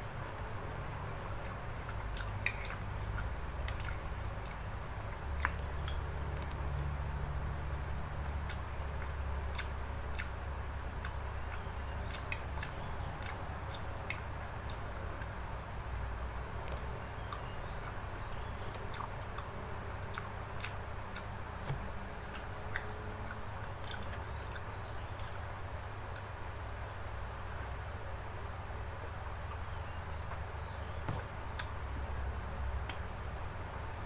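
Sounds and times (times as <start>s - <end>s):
steady low hum: 0.0s - 34.0s
person chewing food: 1.3s - 6.7s, 8.3s - 27.2s
mouth clicks and smacks: 8.4s - 10.4s.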